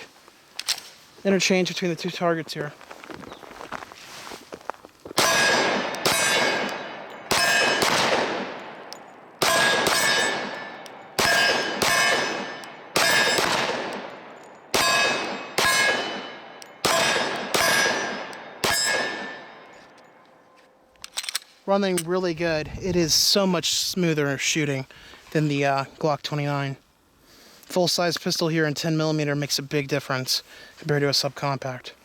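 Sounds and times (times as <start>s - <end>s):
pistol shots: 5.2s - 19.8s
steel targets ringing: 5.2s - 20.4s.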